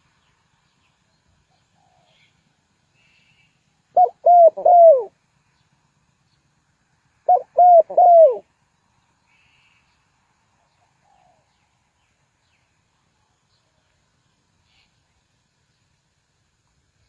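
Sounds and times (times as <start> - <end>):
dove cooing: 3.9 - 5.2, 7.2 - 8.5.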